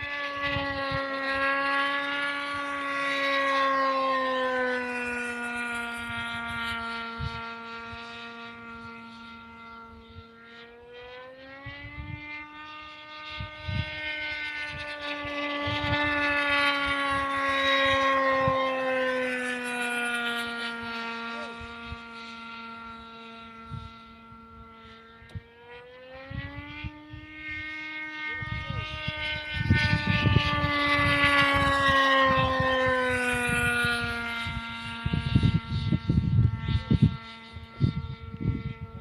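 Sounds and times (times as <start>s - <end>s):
model plane engine whining: 0.0s - 39.0s.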